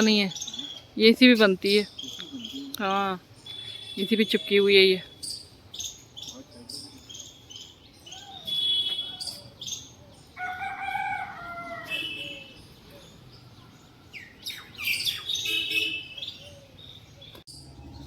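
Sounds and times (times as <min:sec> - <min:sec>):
small birds chirping: 0:00.0 - 0:18.0
rooster crowing: 0:10.4 - 0:12.5.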